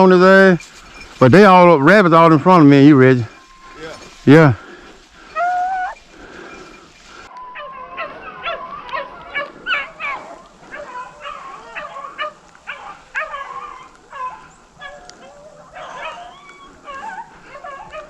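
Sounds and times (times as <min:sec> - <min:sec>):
hounds yelping: 0:00.0 - 0:18.0
hound drawn-out cry: 0:07.6 - 0:18.0.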